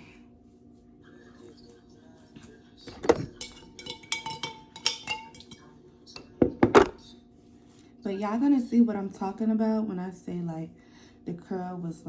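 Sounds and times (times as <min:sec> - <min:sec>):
hairbrush clinking against cup: 0:02.9 - 0:06.9.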